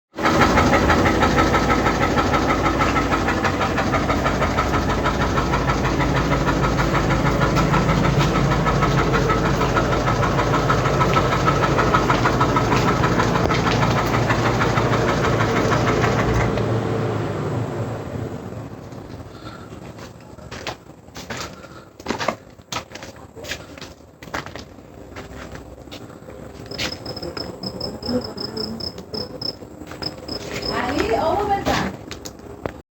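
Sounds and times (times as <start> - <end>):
engine running with rapid pulse: 0.1 - 21.0, 26.4 - 31.4.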